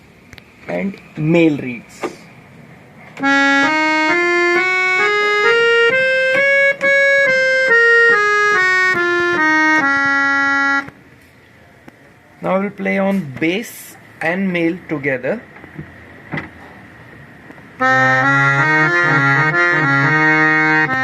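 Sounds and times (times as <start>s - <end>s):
reed harmonium playing a scale: 3.2s - 11.0s, 17.8s - 21.0s.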